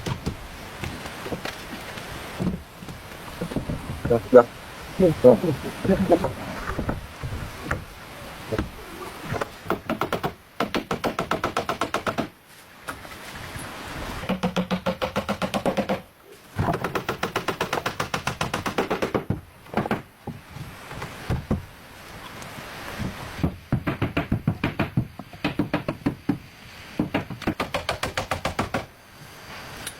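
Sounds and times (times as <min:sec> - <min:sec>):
hammering on wood: 0:09.4 - 0:12.3, 0:14.2 - 0:20.4, 0:23.4 - 0:26.4, 0:27.0 - 0:28.9.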